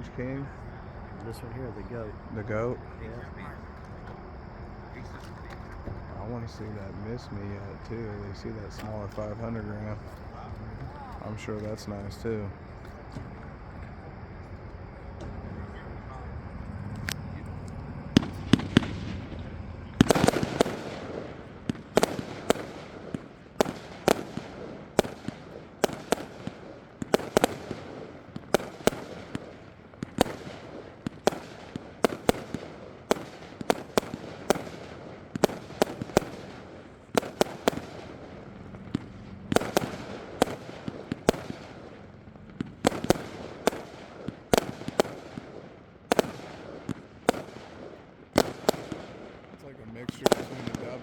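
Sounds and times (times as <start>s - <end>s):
fireworks bangs: 0.0s - 51.0s.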